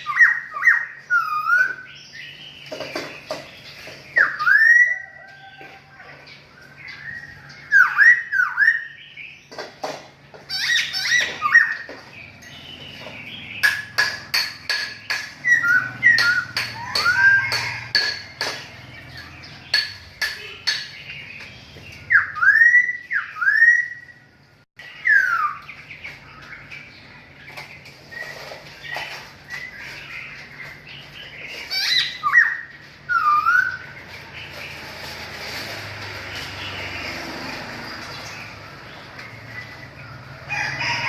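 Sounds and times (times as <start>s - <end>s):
songbirds chirping and whistling: 0.0s - 41.0s
sharp clicking bird chips: 6.6s - 23.9s.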